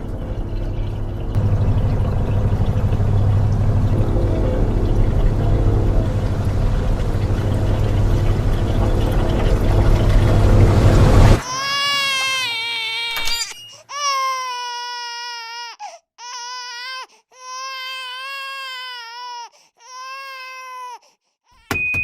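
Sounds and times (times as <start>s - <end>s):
infant crying: 11.4s - 21.7s.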